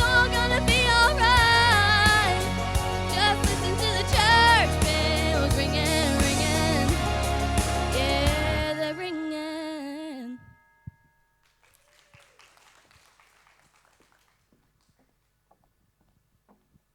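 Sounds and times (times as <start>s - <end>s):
country band playing: 0.0s - 8.8s.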